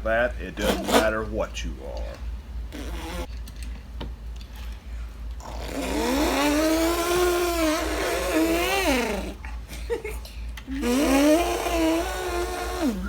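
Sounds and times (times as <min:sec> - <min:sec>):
person imitating car engine: 0:00.4 - 0:01.2, 0:05.6 - 0:09.6, 0:10.7 - 0:13.0.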